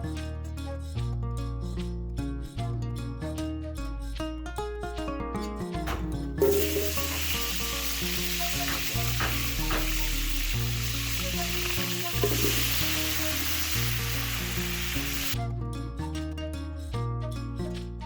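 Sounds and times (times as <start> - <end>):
background music: 0.0 - 18.0
food sizzling in oil: 5.9 - 15.4.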